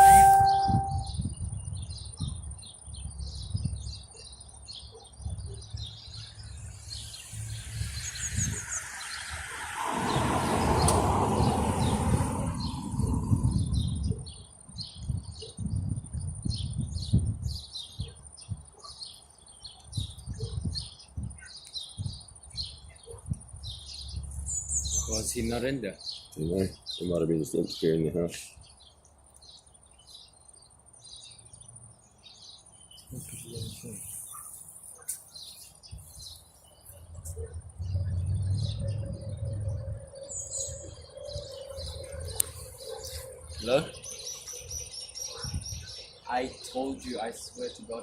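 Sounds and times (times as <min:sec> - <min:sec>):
rushing noise: 0:00.0 - 0:01.0
small birds chirping: 0:00.0 - 0:48.0.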